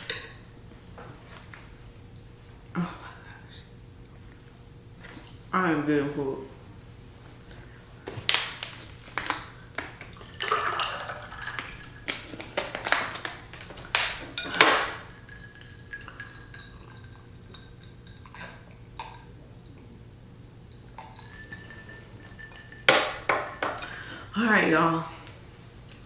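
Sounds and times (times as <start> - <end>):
cutlery clinking on a plate: 14.0 - 16.8.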